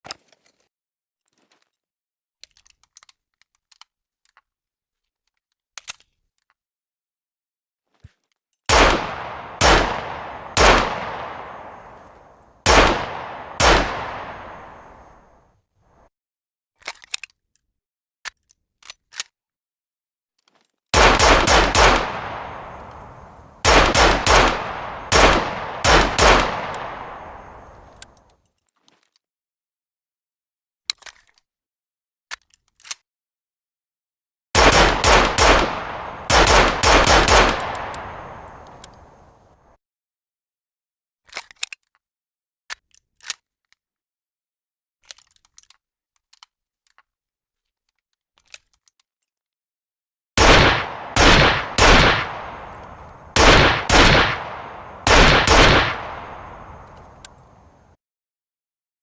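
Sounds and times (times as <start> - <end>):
handgun mechanical clicks and rattles: 2.4 - 6.7, 11.5 - 12.6, 16.8 - 19.4, 20.4 - 29.2, 30.9 - 31.5, 32.3 - 33.1, 34.6 - 39.4, 41.3 - 42.1, 42.7 - 43.9, 45.0 - 49.4, 50.6 - 57.8
rapid echoing gunshots: 8.7 - 15.4, 21.0 - 28.1, 34.6 - 39.2, 50.4 - 57.6
handgun metallic clicks: 8.8 - 15.4, 21.0 - 28.3, 34.6 - 39.4, 50.4 - 57.8.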